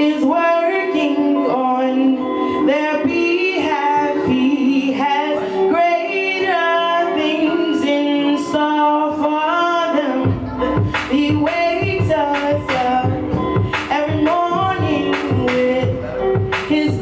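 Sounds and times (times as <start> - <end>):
woman singing: 0.0 - 17.0
bass line and beat: 10.2 - 17.0.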